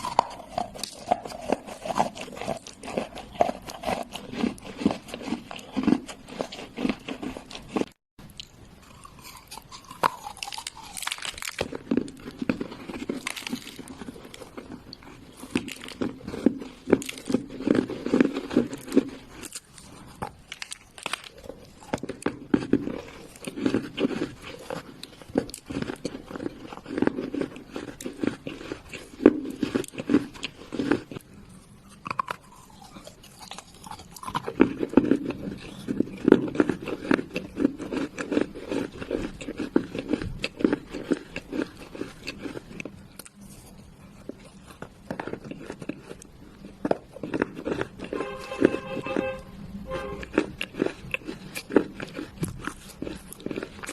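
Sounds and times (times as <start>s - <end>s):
chewing clay crunches: 0.0s - 53.9s.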